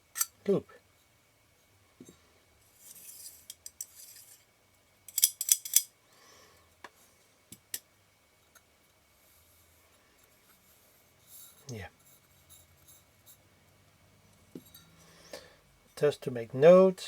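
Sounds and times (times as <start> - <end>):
small metal clicks: 5.1 - 5.9
soft rub: 9.1 - 13.5.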